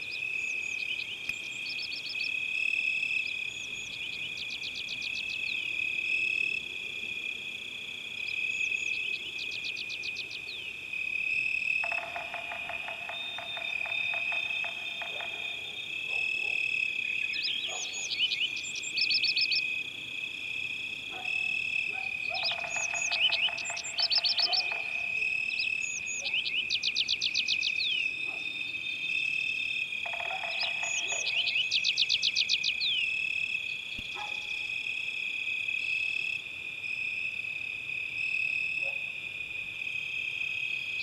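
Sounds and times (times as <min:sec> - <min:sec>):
bird chirps: 0:11.8 - 0:19.7, 0:21.1 - 0:29.1, 0:30.0 - 0:34.7.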